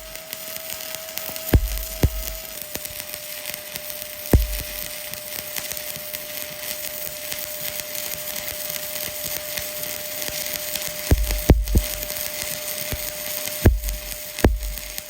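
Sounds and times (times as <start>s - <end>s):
welding arc crackling: 0.0s - 15.0s
loud thump: 1.6s - 2.4s, 4.4s - 4.8s, 11.1s - 12.0s, 13.7s - 14.9s.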